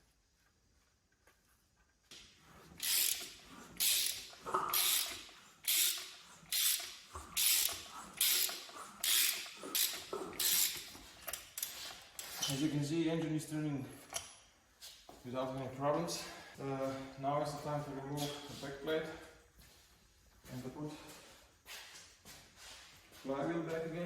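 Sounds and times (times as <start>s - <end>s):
ratchet wrench clicking: 2.8s - 12.6s.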